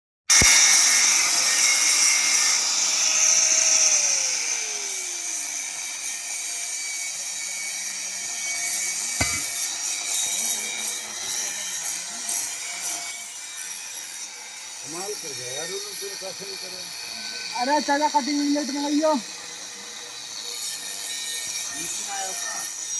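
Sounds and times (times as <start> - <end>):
grinder cutting disc hiss: 0.3 - 22.9
sharp knock: 9.2 - 9.6.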